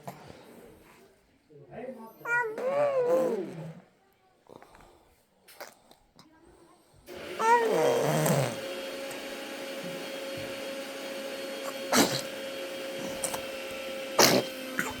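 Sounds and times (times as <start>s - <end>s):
baby sneezing: 11.6s - 12.4s, 14.2s - 15.0s.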